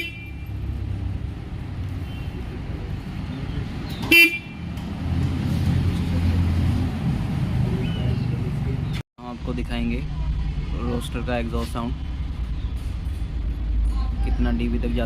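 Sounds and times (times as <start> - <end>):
motorcycle horn toot: 0.0 - 0.6, 4.0 - 4.7
steady low rumble: 8.5 - 15.0.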